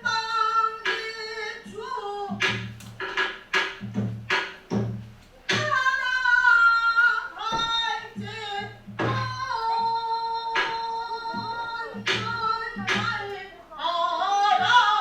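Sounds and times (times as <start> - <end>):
barrel drum strokes: 7.4 - 9.5.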